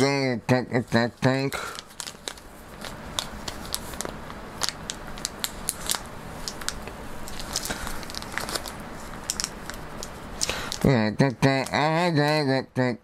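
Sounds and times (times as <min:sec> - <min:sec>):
plastic packaging crackling: 0:01.6 - 0:10.9.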